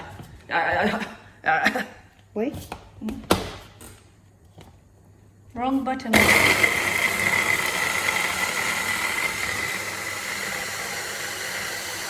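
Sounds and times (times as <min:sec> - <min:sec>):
blender motor whining: 0:06.1 - 0:12.0.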